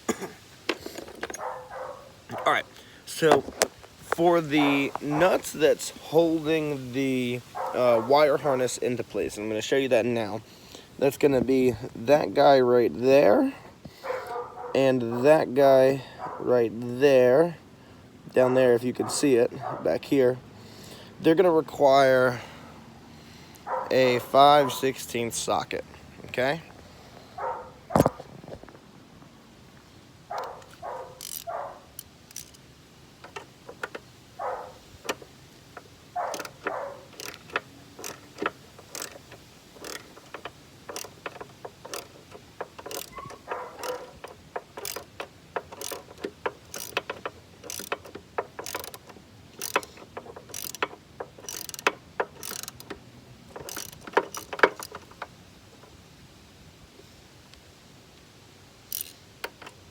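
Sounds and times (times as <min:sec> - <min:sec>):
ratchet wrench clicking: 0:30.4 - 0:34.1, 0:34.9 - 0:55.9, 0:58.9 - 0:59.8.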